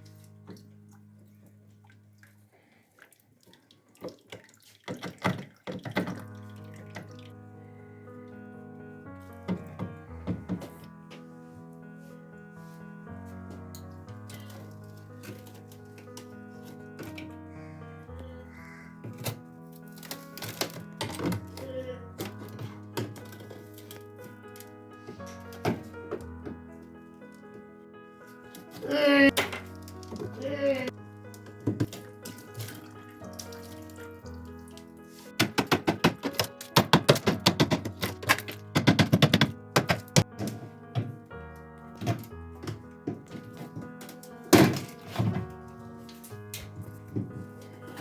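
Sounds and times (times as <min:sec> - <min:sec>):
instrumental background music: 0:00.0 - 0:02.7, 0:05.8 - 0:48.0
water splashing over ice: 0:02.0 - 0:07.4, 0:31.6 - 0:38.5.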